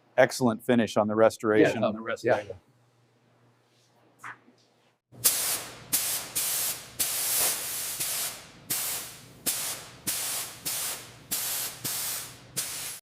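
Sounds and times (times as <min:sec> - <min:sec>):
pressurised spray hissing: 0:05.2 - 0:13.0.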